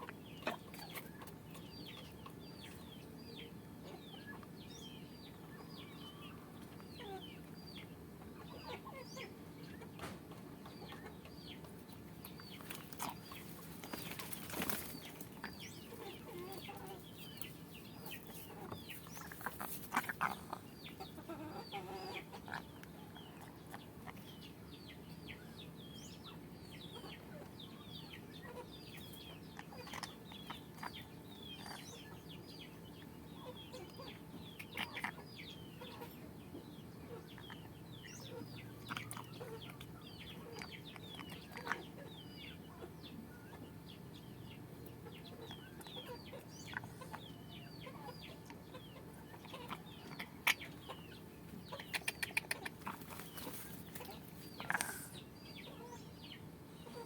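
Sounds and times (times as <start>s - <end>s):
chickens clucking and chirping: 0.0s - 57.0s
wings flapping: 13.8s - 15.3s.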